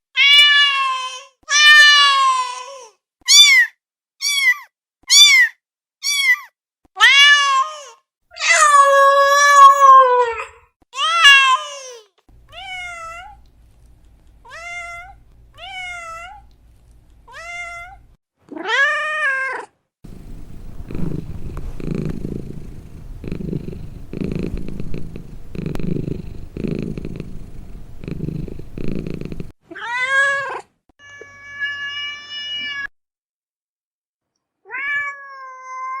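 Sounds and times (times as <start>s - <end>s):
cat purring: 20.1s - 29.6s
cats meowing: 34.7s - 36.0s.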